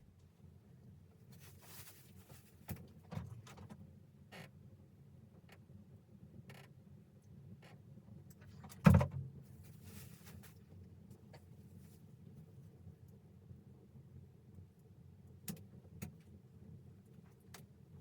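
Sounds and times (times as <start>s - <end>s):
light handling rustles: 1.2s - 3.8s, 9.5s - 12.3s.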